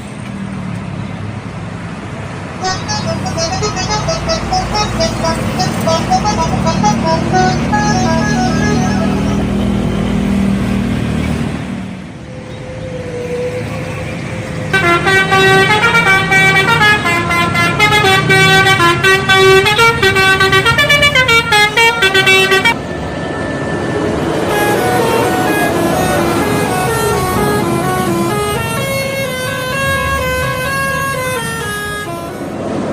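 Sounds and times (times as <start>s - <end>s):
engine noise: 0.0s - 32.9s
musical bus horn playing tunes: 2.6s - 10.2s, 14.7s - 22.8s, 24.4s - 32.9s.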